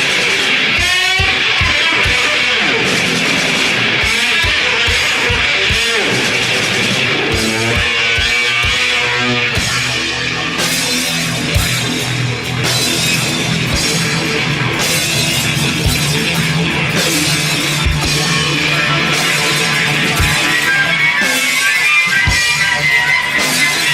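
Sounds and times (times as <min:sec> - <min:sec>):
drum kit: 0:00.0 - 0:23.9
electric guitar: 0:00.0 - 0:23.9.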